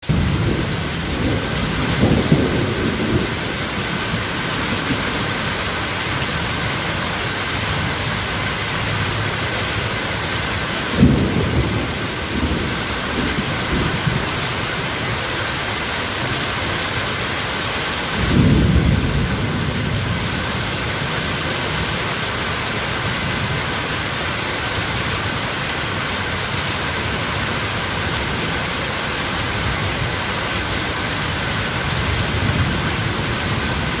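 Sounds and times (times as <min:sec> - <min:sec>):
thunder rumbling: 0:00.0 - 0:15.2, 0:18.1 - 0:22.0, 0:29.5 - 0:34.0
steady rain hiss: 0:00.0 - 0:34.0.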